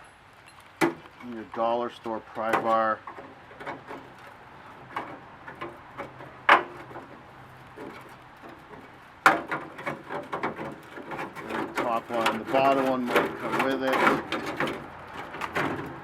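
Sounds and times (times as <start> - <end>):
pry bar scraping sheet metal: 7.8 - 16.0.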